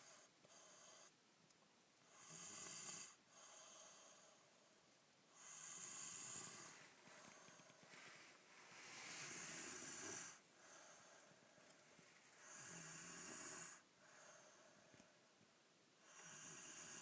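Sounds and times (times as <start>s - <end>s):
child snoring: 2.1s - 4.1s, 5.4s - 6.8s, 9.0s - 10.4s, 12.4s - 13.8s, 16.0s - 17.0s.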